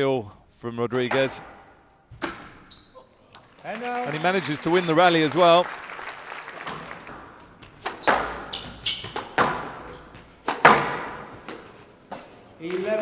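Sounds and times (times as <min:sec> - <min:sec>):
squash ball hits echoing: 0:01.1 - 0:02.7, 0:06.6 - 0:13.0
shoe squeaks on court floor: 0:02.1 - 0:03.4, 0:07.1 - 0:12.5.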